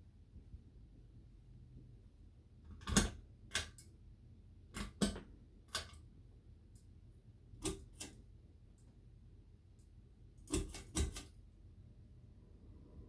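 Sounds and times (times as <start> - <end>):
faint low hum: 0.0 - 13.0.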